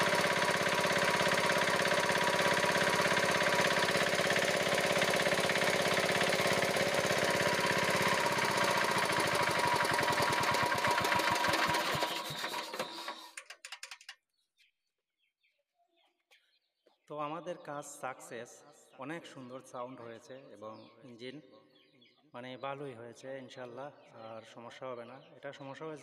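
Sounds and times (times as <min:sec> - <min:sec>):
diesel engine running and stopping: 0:00.0 - 0:13.6.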